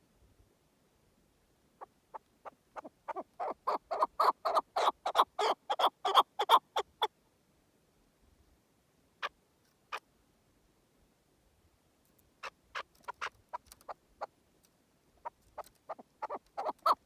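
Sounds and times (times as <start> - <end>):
partridge clucking calls: 1.8 - 7.1, 12.4 - 14.3, 15.2 - 17.0.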